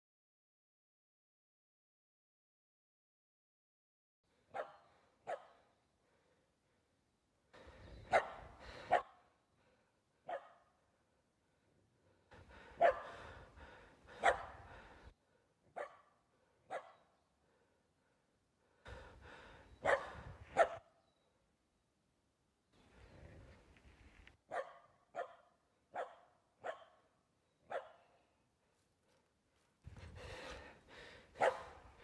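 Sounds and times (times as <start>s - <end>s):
dog barking: 4.5s - 5.8s, 8.1s - 9.3s, 10.2s - 10.8s, 12.7s - 13.5s, 14.1s - 14.7s, 15.7s - 17.2s, 19.8s - 21.0s, 24.5s - 28.3s, 31.3s - 32.0s.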